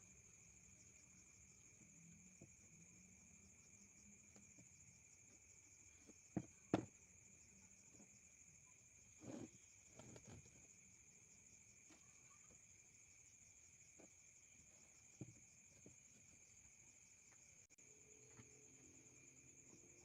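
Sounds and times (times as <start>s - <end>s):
crickets chirring: 0.0s - 20.0s
soft knocks: 6.3s - 7.0s.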